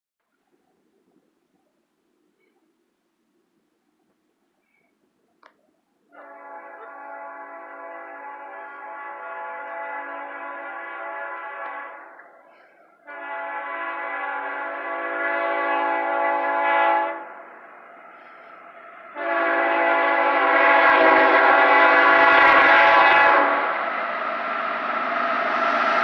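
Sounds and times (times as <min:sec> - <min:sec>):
train passing: 0:06.0 - 0:26.0
locomotive air horn blasts: 0:06.1 - 0:17.6, 0:18.2 - 0:24.3.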